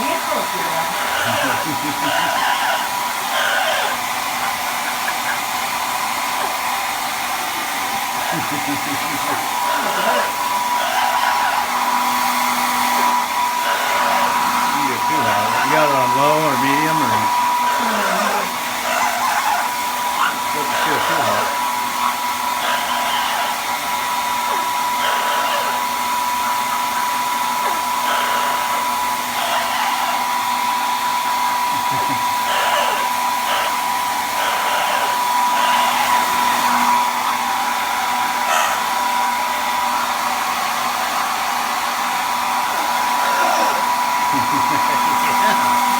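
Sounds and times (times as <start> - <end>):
hair dryer blowing: 0.0 - 45.9
wavering voice-like sound: 14.7 - 18.6, 20.6 - 21.6.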